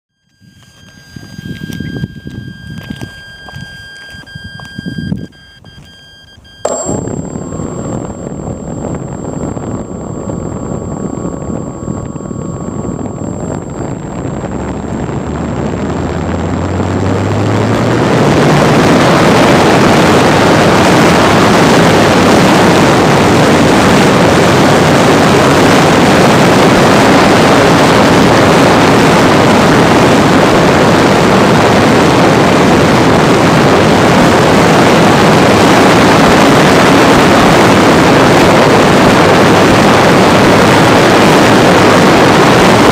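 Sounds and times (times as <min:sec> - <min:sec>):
electric motor humming: 0:06.6 - 0:19.6
propeller wash and wind rushing: 0:06.7 - 0:42.9.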